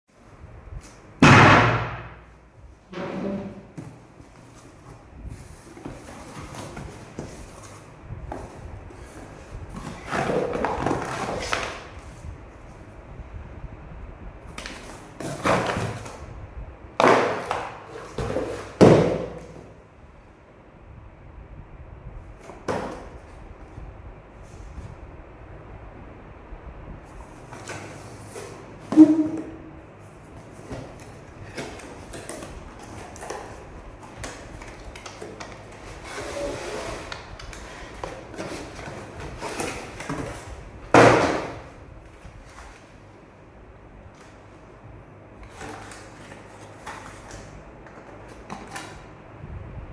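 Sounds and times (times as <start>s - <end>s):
knocks and thuds of handling: 17.0s - 19.8s, 22.4s - 23.2s, 27.4s - 36.1s, 37.4s - 42.8s.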